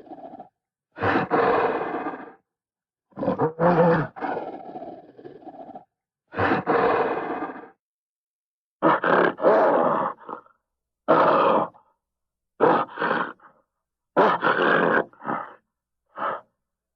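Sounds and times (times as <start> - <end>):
giant ape roaring: 3.2 - 7.8, 11.1 - 11.8.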